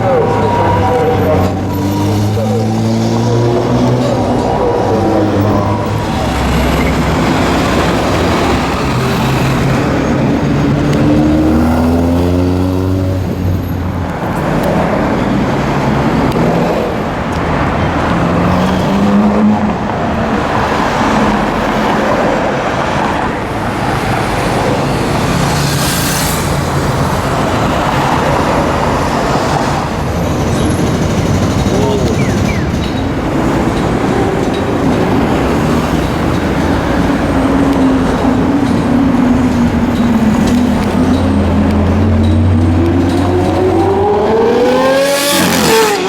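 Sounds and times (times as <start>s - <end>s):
road traffic noise: 0.0s - 46.0s
sports car engine accelerating: 1.5s - 13.6s, 35.2s - 46.0s.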